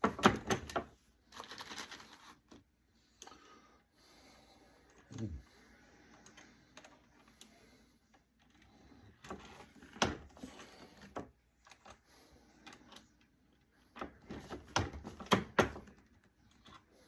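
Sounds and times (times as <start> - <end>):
tools clicking and knocking: 0.0 - 0.9.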